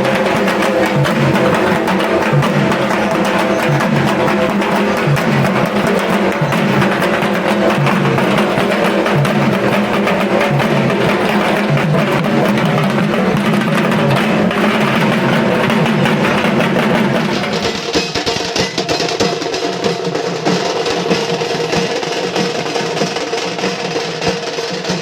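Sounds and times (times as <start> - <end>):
steady pitched tones: 0.0 - 17.9
drum-driven music: 0.0 - 25.0.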